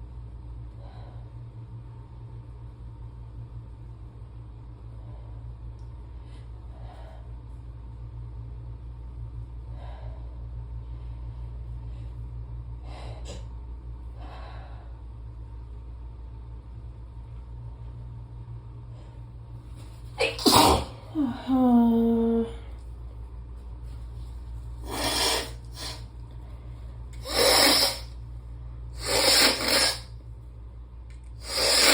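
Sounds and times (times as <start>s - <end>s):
steady low hum: 0.0s - 31.9s
faint breaths: 9.5s - 15.2s
person sneezing: 20.2s - 21.5s, 24.9s - 26.0s, 27.2s - 28.1s, 29.0s - 30.1s.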